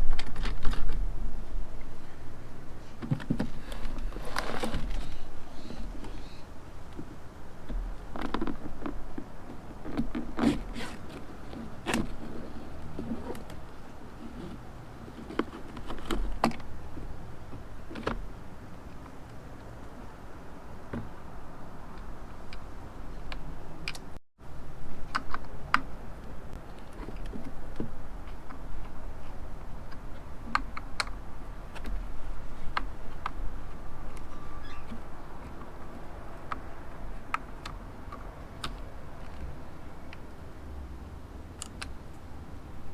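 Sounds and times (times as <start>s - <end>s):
handling scrapes and knocks: 2.8s - 17.7s.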